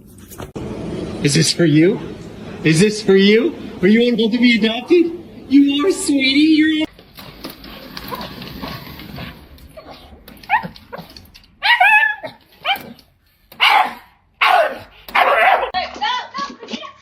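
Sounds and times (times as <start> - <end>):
dog giving high-pitched calls: 11.6 - 12.8.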